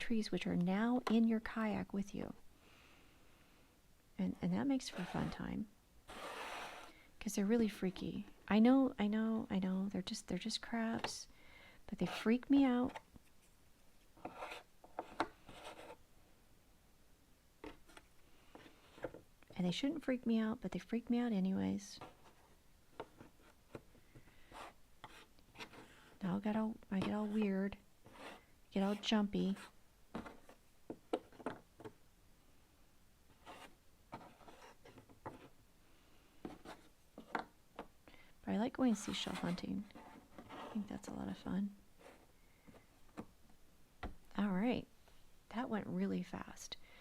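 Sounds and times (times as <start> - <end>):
puzzle pieces scraping on table: 6.1 - 6.9.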